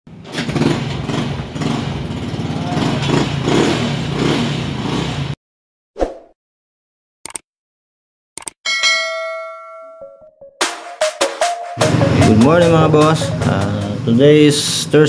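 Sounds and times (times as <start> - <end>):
motorcycle engine running: 0.1 - 5.4, 11.8 - 15.0.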